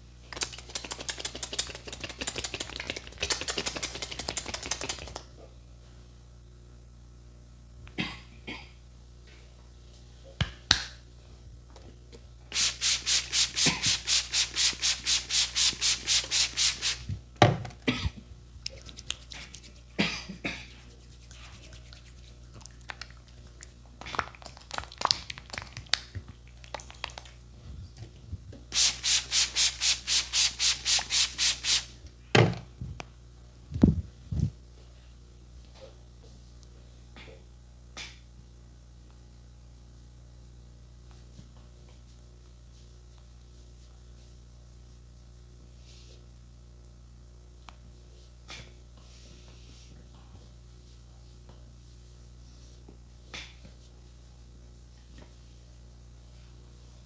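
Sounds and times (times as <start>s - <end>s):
hands rubbing over skin and hair: 0.4s - 5.2s, 12.5s - 17.2s, 18.8s - 19.9s, 20.8s - 22.4s, 28.7s - 32.0s.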